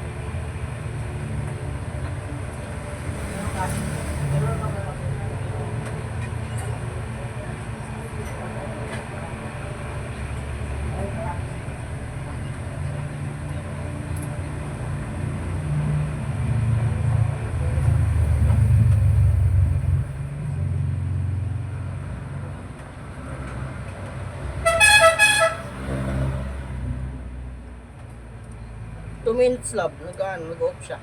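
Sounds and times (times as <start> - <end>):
vehicle engine rumble: 0.0 - 31.0
vehicle horn short beeps: 24.6 - 25.7.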